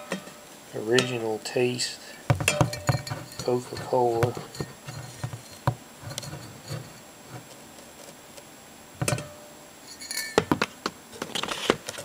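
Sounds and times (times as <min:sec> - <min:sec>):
glass bottle clinking: 0:02.3 - 0:07.0.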